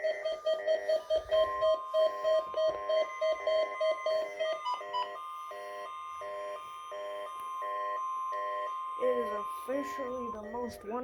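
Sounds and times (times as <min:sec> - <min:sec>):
steady warning alarm tone: 0:00.0 - 0:11.0
electronic beeping: 0:08.4 - 0:11.0.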